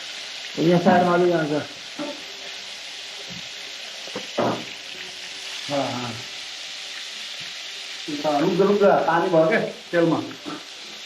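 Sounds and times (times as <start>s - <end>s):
fish sizzling in hot oil: 0.0s - 11.0s.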